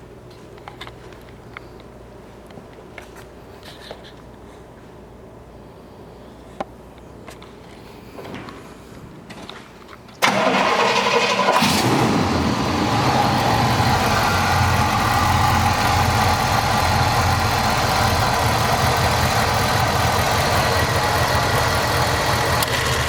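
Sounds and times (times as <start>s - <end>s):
car engine idling: 10.2s - 23.0s
starter motor cranking: 10.2s - 23.0s.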